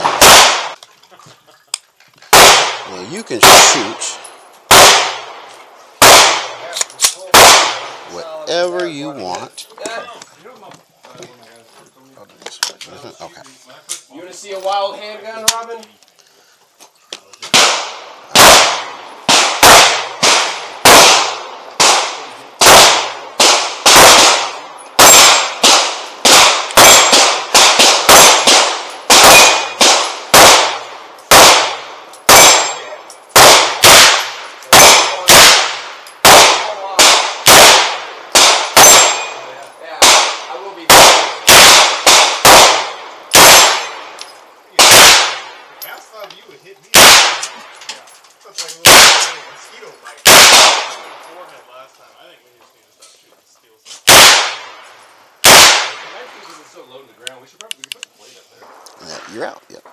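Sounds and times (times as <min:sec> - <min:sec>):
handgun shots with echo: 0:00.0 - 0:00.8, 0:02.3 - 0:05.2, 0:06.0 - 0:07.8, 0:17.4 - 0:39.4, 0:40.0 - 0:44.0, 0:44.8 - 0:45.5, 0:46.9 - 0:47.6, 0:48.8 - 0:49.4, 0:50.2 - 0:51.0, 0:54.1 - 0:54.7, 0:55.4 - 0:56.1.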